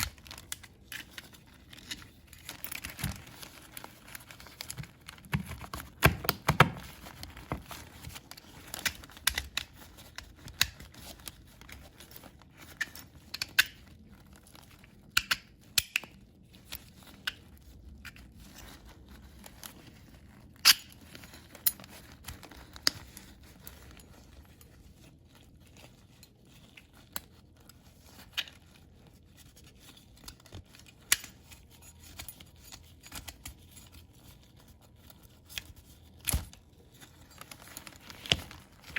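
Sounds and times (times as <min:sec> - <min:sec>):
paper rustling: 0:00.0 - 0:13.2
small parts clicking and tapping: 0:00.0 - 0:14.0, 0:14.7 - 0:18.8.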